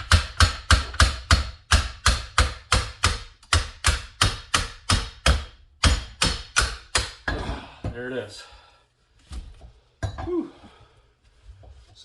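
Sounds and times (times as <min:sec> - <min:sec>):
sharp metal knocks: 0:00.0 - 0:07.3.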